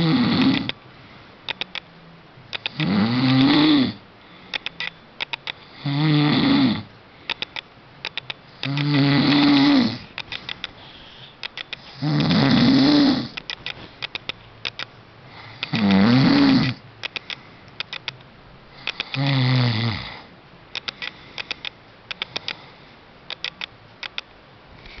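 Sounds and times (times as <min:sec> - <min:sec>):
pet snoring: 0:00.0 - 0:00.7, 0:02.7 - 0:04.0, 0:05.6 - 0:06.9, 0:08.6 - 0:10.0, 0:11.8 - 0:13.4, 0:15.3 - 0:16.8, 0:18.8 - 0:20.3.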